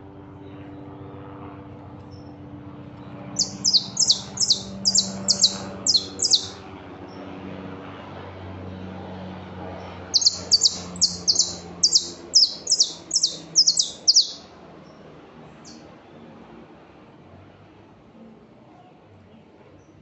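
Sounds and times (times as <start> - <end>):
songbird whistled notes: 3.4 - 6.6, 10.2 - 14.4.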